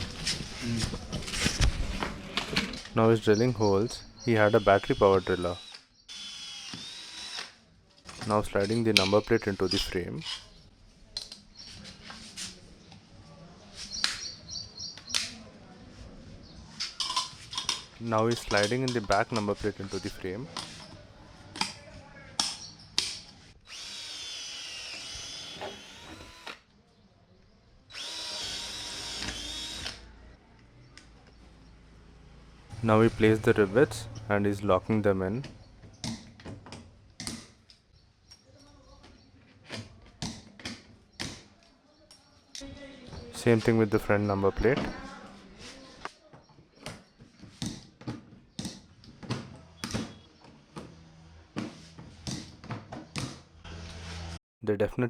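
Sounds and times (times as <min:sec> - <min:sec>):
cordless drill whining: 0:04.2 - 0:07.6, 0:23.6 - 0:26.6, 0:27.9 - 0:30.1.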